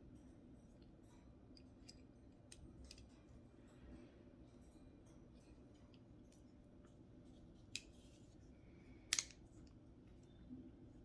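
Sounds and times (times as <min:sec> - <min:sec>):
folding knife clicks: 0:09.1 - 0:09.4.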